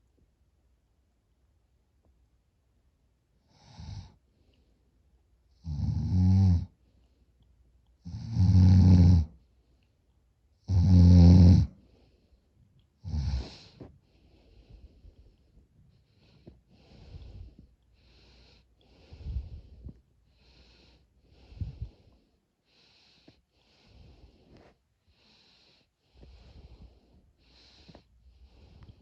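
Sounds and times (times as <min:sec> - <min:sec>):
person breathing noisily in sleep: 0:11.5 - 0:29.0.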